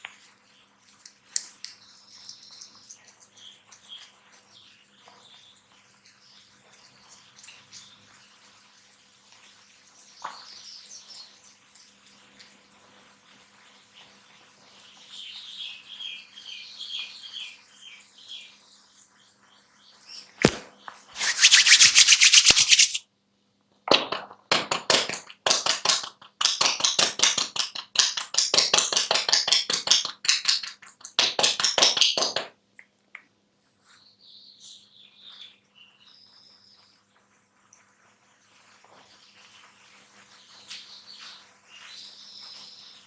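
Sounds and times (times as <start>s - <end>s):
hair crackling between fingers: 21.2s - 23.0s, 25.6s - 33.3s
faint high chirping: 33.8s - 43.0s.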